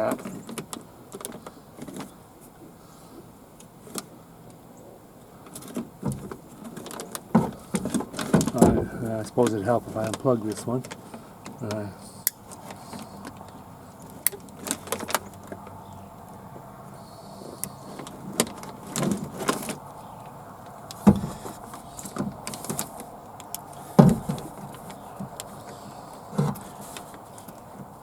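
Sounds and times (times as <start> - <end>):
hands working inside car door: 5.5 - 15.8, 17.6 - 28.0
sharp knocks: 7.3 - 9.1, 21.0 - 22.8, 24.0 - 25.3.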